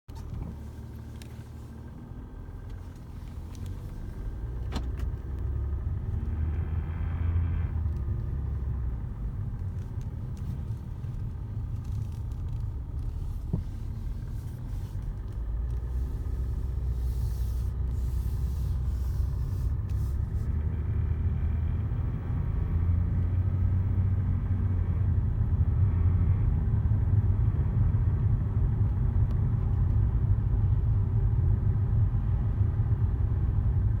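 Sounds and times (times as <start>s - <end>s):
car road and engine rumble: 0.0s - 34.0s
faint dashboard squeak: 0.1s - 1.5s.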